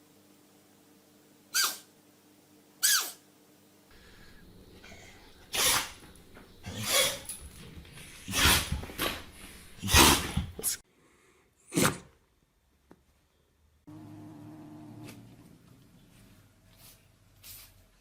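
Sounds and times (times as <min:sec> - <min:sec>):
background hum: 0:00.0 - 0:11.4, 0:13.0 - 0:18.0
pet sneezing: 0:04.8 - 0:10.8.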